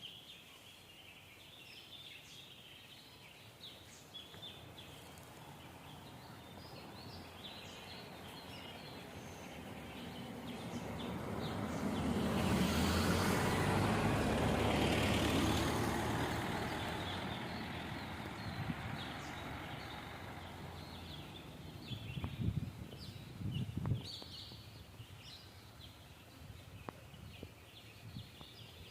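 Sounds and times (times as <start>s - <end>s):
small birds chirping: 0.0s - 28.9s
vehicle passing by: 4.4s - 24.2s.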